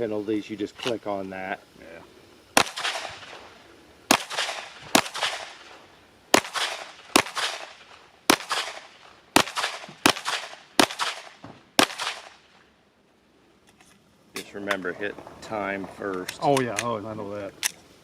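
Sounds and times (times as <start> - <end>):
handgun shots with echo: 2.6 - 3.4, 4.1 - 5.6, 6.4 - 12.4.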